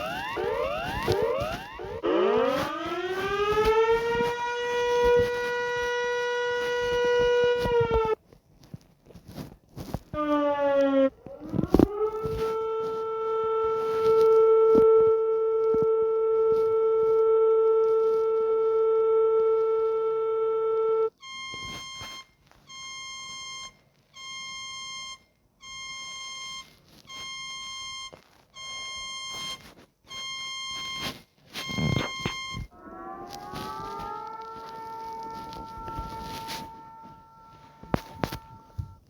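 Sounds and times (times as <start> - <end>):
electronic alarm beeping: 0.0 - 8.2, 18.4 - 39.0
rising siren tone: 0.0 - 8.2, 10.2 - 21.1, 32.0 - 39.0.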